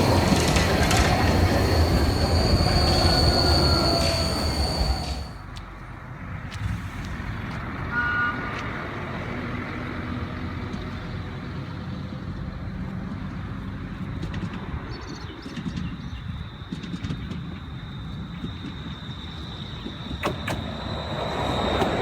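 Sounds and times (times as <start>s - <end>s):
low vehicle rumble: 0.0s - 5.5s.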